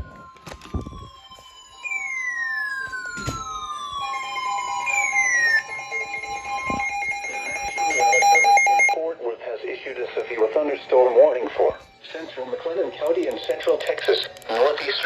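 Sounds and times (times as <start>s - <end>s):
falling siren-like glides: 0.0s - 9.0s
steady warning alarm tone: 0.0s - 9.0s.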